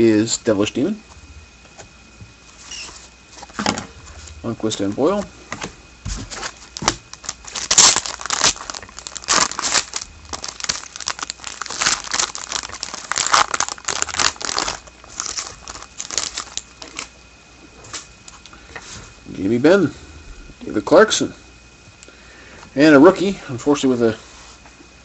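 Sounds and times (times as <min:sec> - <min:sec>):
wrapper tearing and crinkling: 0:06.3 - 0:17.1.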